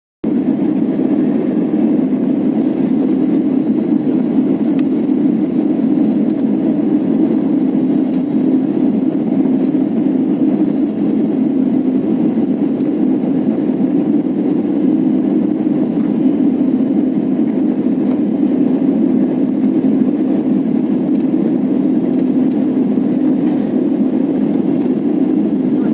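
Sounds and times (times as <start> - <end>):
jet airliner landing: 0.2 - 25.9.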